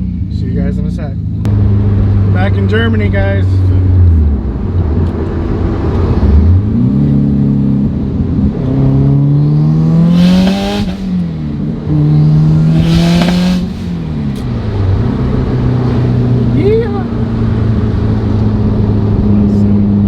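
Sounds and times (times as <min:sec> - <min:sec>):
car engine accelerating: 0:01.3 - 0:20.0
rush of air: 0:10.0 - 0:11.8, 0:12.4 - 0:14.9.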